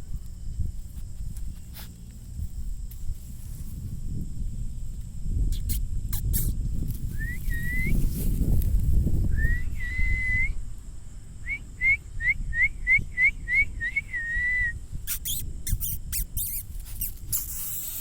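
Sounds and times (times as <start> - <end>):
person whistling for dog: 7.1 - 8.1, 9.3 - 10.6, 11.5 - 16.3.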